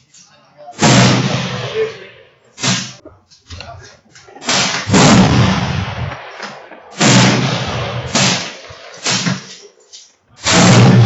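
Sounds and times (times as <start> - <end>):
rifle shots ringing: 0.8 - 1.8, 4.4 - 9.7, 10.4 - 11.0.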